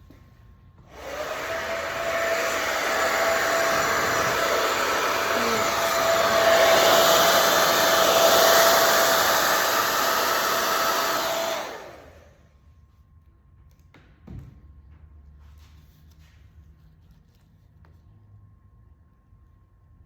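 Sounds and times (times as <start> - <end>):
blow dryer running: 0.8 - 12.5.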